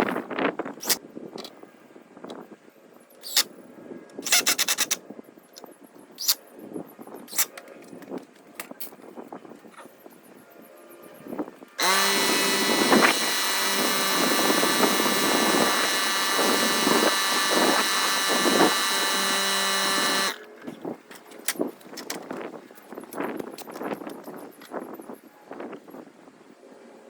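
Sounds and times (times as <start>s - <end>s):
power tool motor running: 11.8s - 20.4s.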